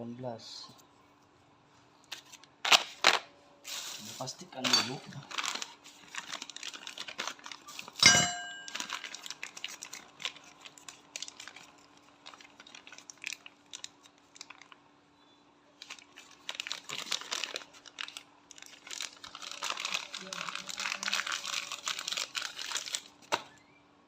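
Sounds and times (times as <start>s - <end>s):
rustling and crinkling: 2.1s - 14.8s, 15.8s - 23.5s
sharp ringing metal clink: 8.0s - 8.7s.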